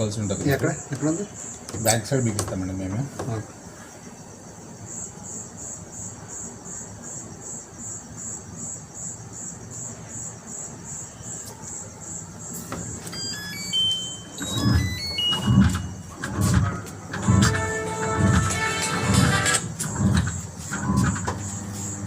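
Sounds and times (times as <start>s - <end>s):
cricket chirping: 0.0s - 22.0s
mobile phone ringtone: 13.0s - 15.8s.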